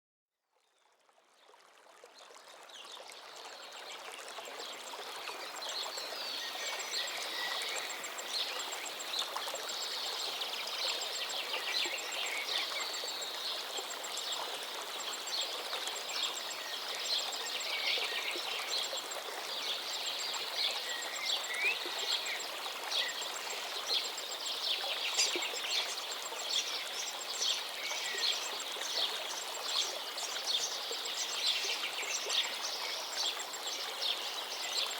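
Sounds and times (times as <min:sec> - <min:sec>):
river flowing: 0:00.9 - 0:34.9
songbirds chirping: 0:03.0 - 0:34.9.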